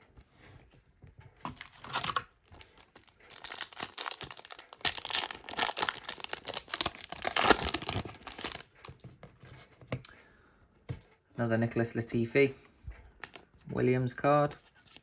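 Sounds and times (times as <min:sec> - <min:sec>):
plastic packaging crinkling: 0:01.5 - 0:09.0.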